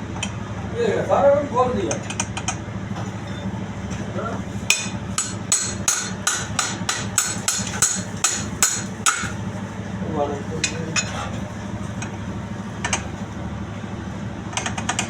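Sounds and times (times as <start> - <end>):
low machine hum: 0.0 - 15.0
hammer striking metal: 4.7 - 9.4.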